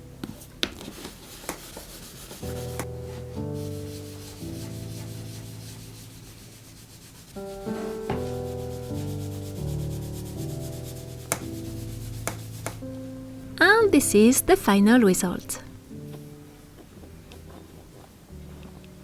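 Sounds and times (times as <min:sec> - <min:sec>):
soft background music: 0:00.0 - 0:19.0
sock rubbing wax on book cover: 0:00.3 - 0:12.8.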